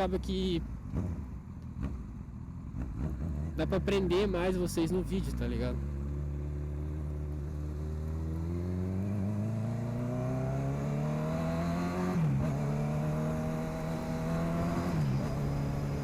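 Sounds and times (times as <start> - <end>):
motorcycle engine accelerating: 0.8 - 16.0.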